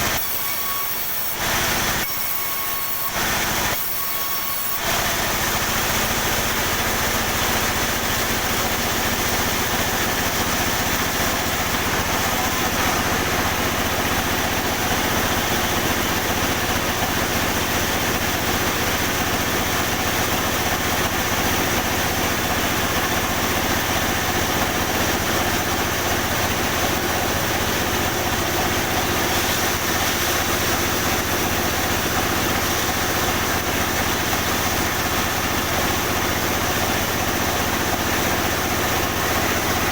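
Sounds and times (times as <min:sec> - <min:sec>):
engine-driven saw humming: 0:00.0 - 0:39.9.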